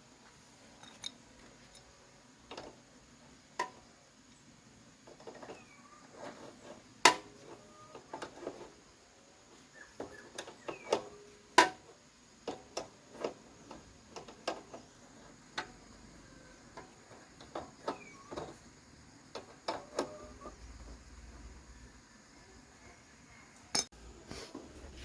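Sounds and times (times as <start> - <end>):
metal tools clinking: 0.7 - 1.9.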